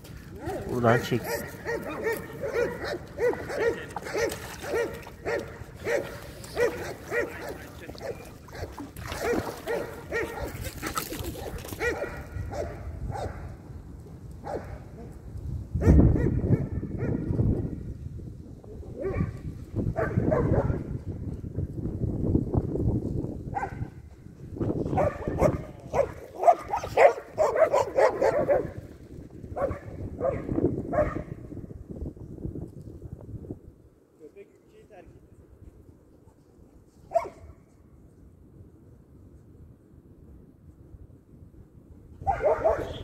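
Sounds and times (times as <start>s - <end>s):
dog barking: 0.5s - 10.6s, 11.4s - 13.5s, 14.4s - 14.8s, 15.8s - 17.2s, 19.0s - 19.3s, 20.0s - 20.8s, 23.6s - 23.9s, 24.9s - 28.8s, 29.6s - 31.3s, 37.1s - 37.5s, 42.2s - 43.0s.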